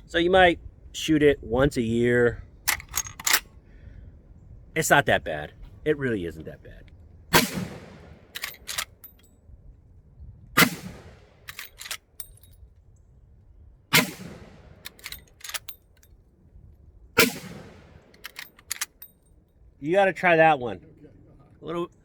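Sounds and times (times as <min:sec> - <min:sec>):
rifle lever clicks: 0:02.7 - 0:03.5, 0:08.3 - 0:09.3, 0:11.4 - 0:12.6, 0:14.8 - 0:16.2, 0:17.9 - 0:19.1
rifle shots echoing: 0:07.3 - 0:09.0, 0:10.6 - 0:12.0, 0:13.9 - 0:15.7, 0:17.2 - 0:18.9.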